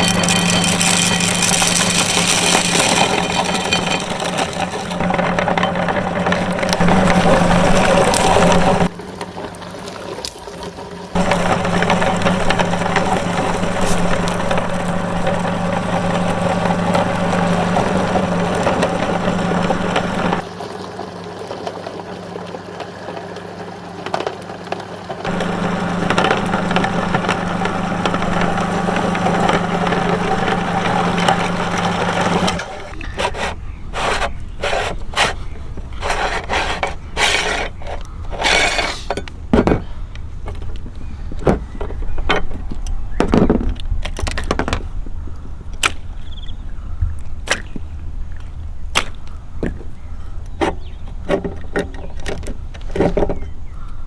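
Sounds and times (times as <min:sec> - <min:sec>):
electric meat grinder running: 0:00.0 - 0:08.9, 0:11.2 - 0:20.5, 0:25.3 - 0:35.2.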